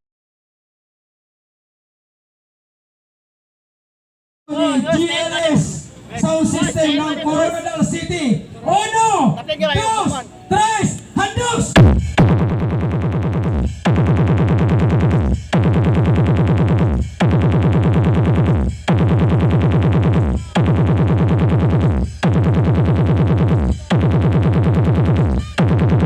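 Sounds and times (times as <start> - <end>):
bass-heavy electronic dance music: 10.8 - 26.0.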